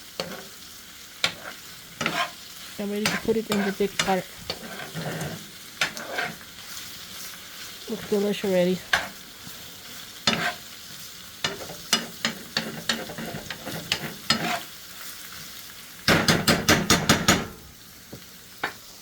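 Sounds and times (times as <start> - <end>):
food sizzling in a frying pan: 0.0 - 19.0
utensil clicking against pan: 3.0 - 6.4, 11.4 - 14.6.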